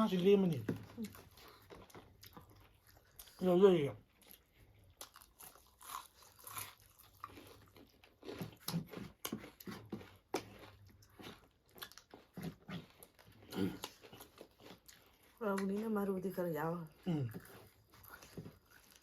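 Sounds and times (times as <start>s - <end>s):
person chewing food: 0.1s - 19.0s.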